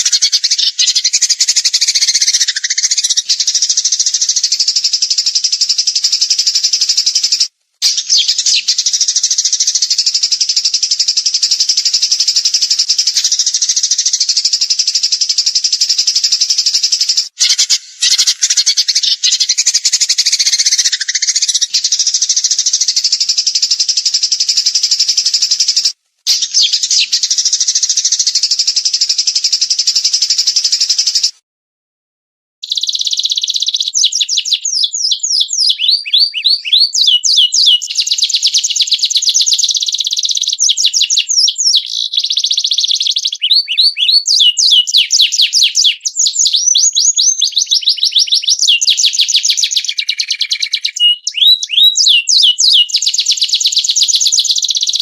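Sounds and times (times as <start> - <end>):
songbird trilling: 0.0 - 31.3, 32.6 - 55.0.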